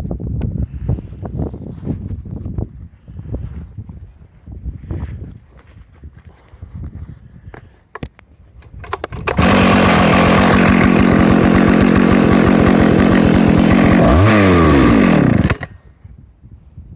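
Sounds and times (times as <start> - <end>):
chainsaw engine running and revving: 9.2 - 15.7.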